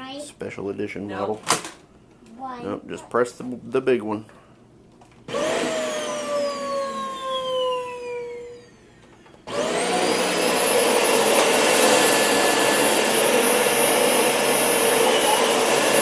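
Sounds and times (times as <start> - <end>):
vacuum cleaner motor whining: 5.3 - 16.0.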